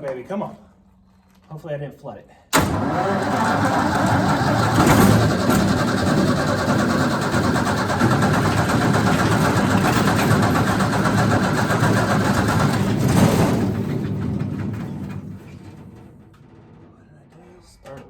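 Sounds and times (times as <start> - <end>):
wood chipper engine running: 2.5 - 16.9.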